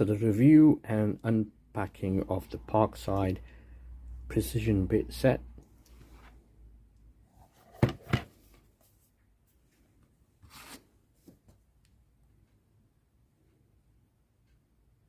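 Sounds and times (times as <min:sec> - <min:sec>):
object knocking: 0:07.7 - 0:08.3.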